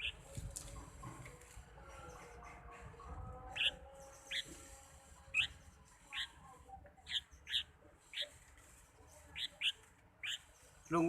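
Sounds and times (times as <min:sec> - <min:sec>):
bird chirping: 0:07.0 - 0:08.4, 0:09.0 - 0:11.0.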